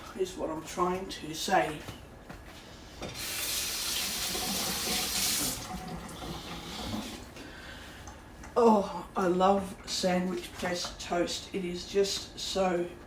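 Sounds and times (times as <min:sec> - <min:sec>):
tap water running into sink: 0:03.2 - 0:07.3.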